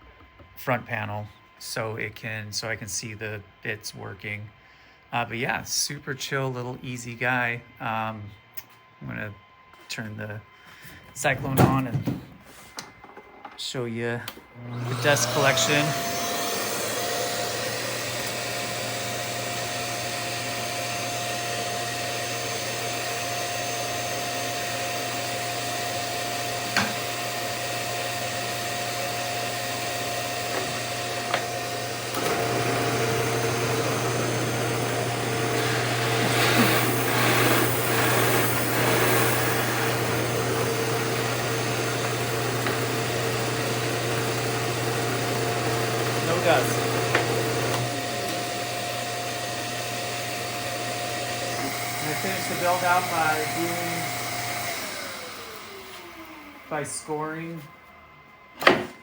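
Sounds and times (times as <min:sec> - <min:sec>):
dust collector whining: 0:13.6 - 0:59.0
drill press motor hum: 0:14.4 - 0:59.0
drill bit cutting wood: 0:14.7 - 0:57.6.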